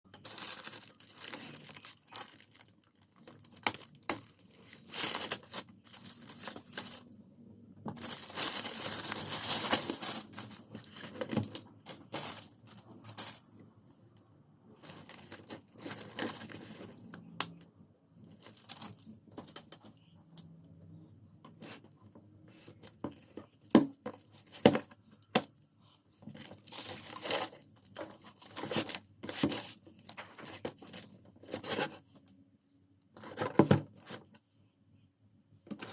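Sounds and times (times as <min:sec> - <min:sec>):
packaging tearing and crinkling: 0:00.1 - 0:07.1, 0:07.9 - 0:13.4, 0:14.8 - 0:17.0.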